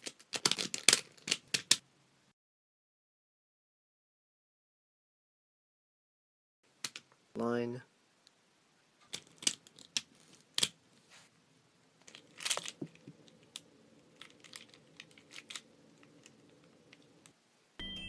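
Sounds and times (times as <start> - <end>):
crinkly rustle: 0.0 - 1.8, 9.0 - 11.3, 12.0 - 17.3.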